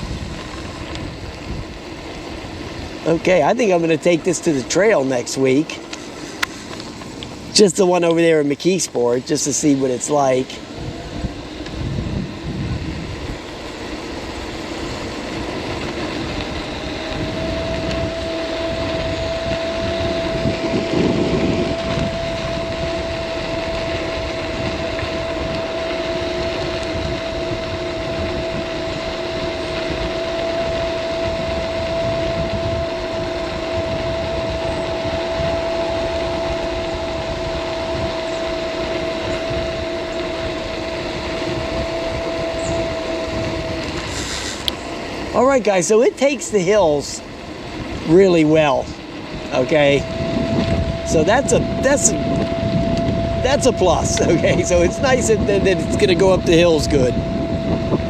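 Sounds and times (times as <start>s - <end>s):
electric motor whine: 0.0s - 58.0s
wind and road noise rumble: 0.0s - 58.0s.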